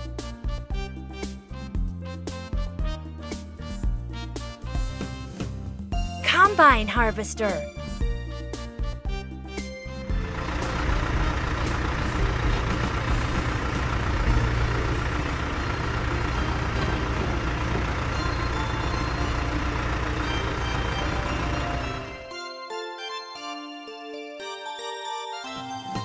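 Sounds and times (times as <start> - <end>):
combine harvester running: 10.0 - 22.3.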